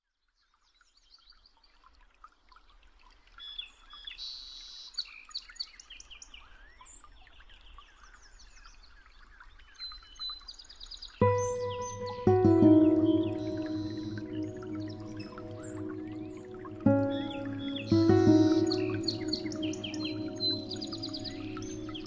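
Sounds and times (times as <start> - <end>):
forest birds chirping and trilling: 11.2 - 22.0.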